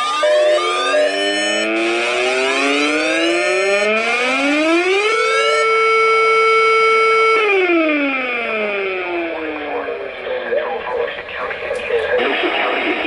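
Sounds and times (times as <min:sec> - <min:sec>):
siren wail: 0:00.0 - 0:10.3.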